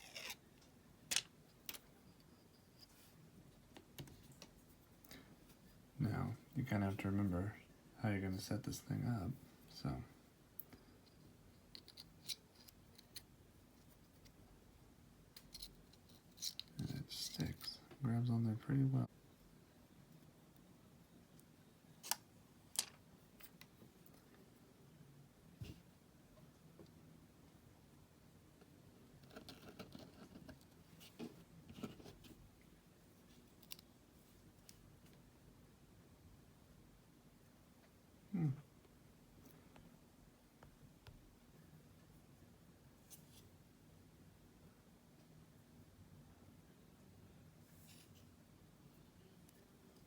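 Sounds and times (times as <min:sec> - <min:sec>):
small clicks and scratching: 0:00.0 - 0:03.0, 0:10.6 - 0:14.4, 0:15.4 - 0:17.8, 0:29.2 - 0:32.4, 0:33.3 - 0:33.9.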